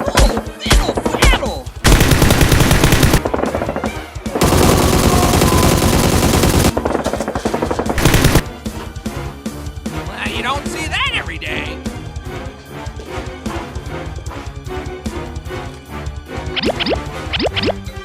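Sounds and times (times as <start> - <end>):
automatic gunfire bursts: 1.8 - 3.8, 4.4 - 8.5.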